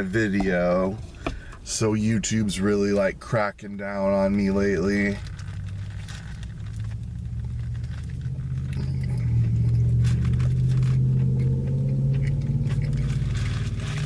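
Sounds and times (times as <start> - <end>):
chewing and crunching food: 4.4 - 14.0
scraping and rustling: 4.8 - 14.0.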